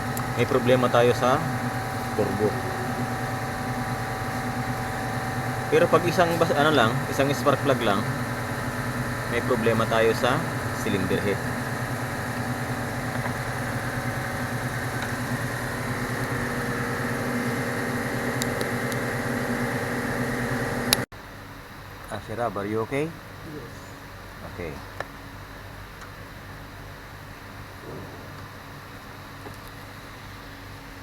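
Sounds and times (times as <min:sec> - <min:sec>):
car engine idling and misfiring: 0:00.0 - 0:21.1
low mechanical hum: 0:00.0 - 0:31.0.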